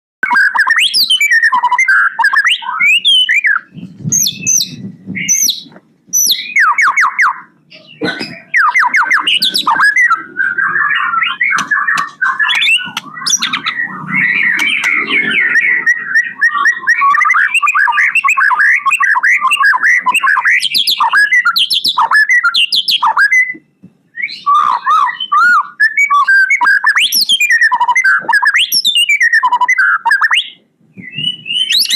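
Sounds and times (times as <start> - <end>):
songbird singing whistles and trills: 0.2 - 31.9.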